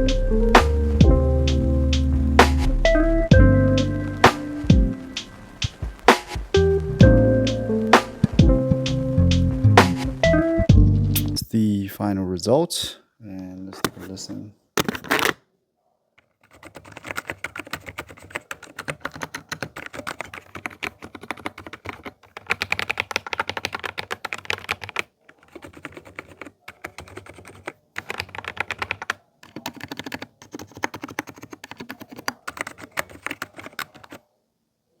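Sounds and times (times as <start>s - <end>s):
typing on keyboard: 16.4s - 34.2s.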